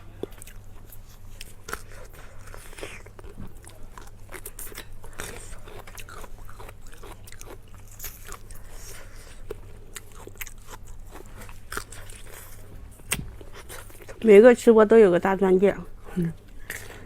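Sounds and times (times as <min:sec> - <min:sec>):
crunchy biting and chewing: 0:00.1 - 0:14.2.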